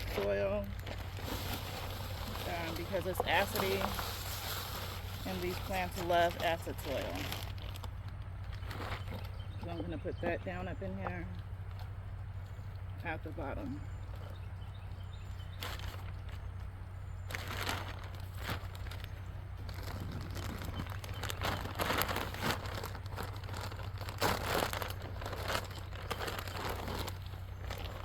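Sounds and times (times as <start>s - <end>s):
plastic bag crinkling: 0.0s - 9.4s, 15.5s - 16.6s, 17.2s - 28.0s
soil rustling and scraping: 0.0s - 9.8s, 15.2s - 28.0s
steady low hum: 0.0s - 28.0s.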